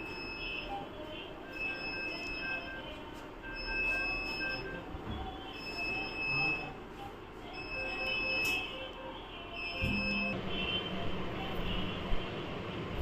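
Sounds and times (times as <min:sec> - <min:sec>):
electronic alarm beeping: 0:00.0 - 0:06.8, 0:07.5 - 0:08.9, 0:09.5 - 0:10.7
short lower beeps: 0:09.6 - 0:10.4.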